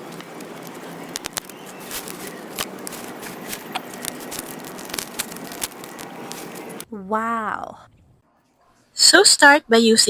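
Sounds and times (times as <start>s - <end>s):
hands handling things clicking: 0.0s - 6.8s.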